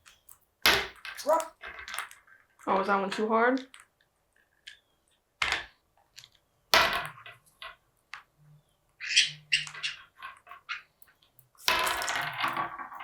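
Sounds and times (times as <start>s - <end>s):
parrots knocking plastic bottle: 0.7s - 2.2s, 11.6s - 12.9s.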